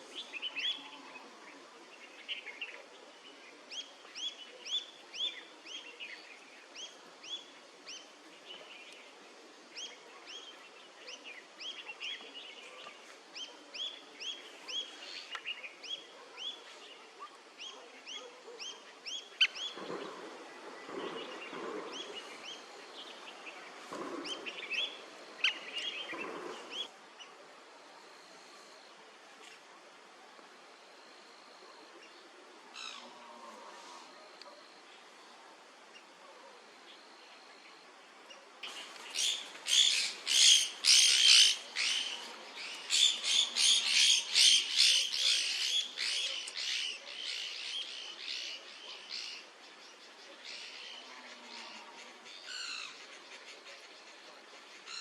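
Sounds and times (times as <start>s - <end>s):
birds chirping: 9.7s - 27.3s, 35.9s - 55.0s.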